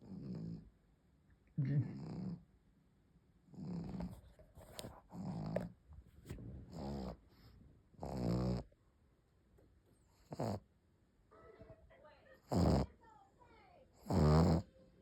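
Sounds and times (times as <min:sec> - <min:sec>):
dog snoring: 0:00.0 - 0:00.7, 0:01.7 - 0:02.5, 0:03.5 - 0:05.8, 0:06.6 - 0:08.8, 0:10.0 - 0:10.7, 0:12.4 - 0:13.0, 0:14.0 - 0:14.8.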